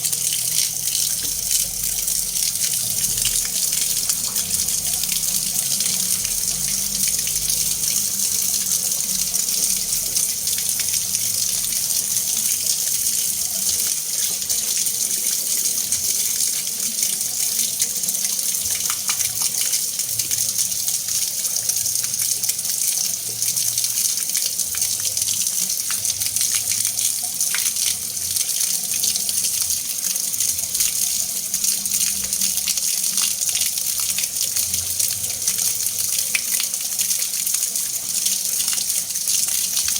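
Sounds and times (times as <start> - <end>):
water churning: 0.0 - 20.3
small crackling clicks and splashes: 0.0 - 29.8.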